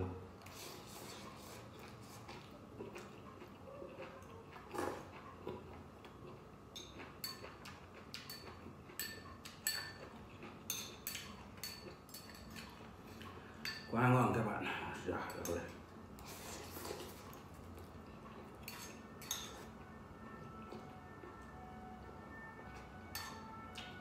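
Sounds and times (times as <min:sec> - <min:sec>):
utensils clinking against a bowl: 0:00.9 - 0:15.8, 0:16.7 - 0:19.9, 0:22.7 - 0:24.0.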